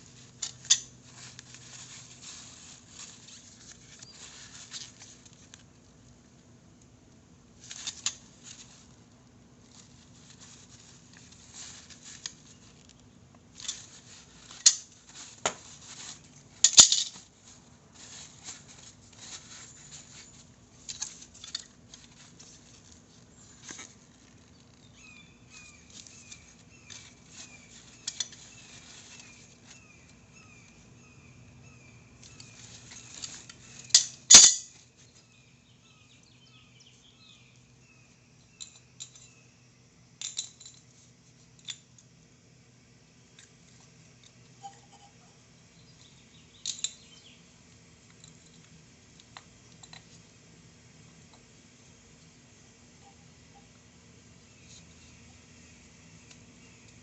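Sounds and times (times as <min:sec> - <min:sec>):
low steady hum: 0:00.0 - 0:57.0
metal parts and tools clicking: 0:00.4 - 0:00.9, 0:16.6 - 0:17.2, 0:27.8 - 0:28.6, 0:32.2 - 0:34.8, 0:46.6 - 0:47.0.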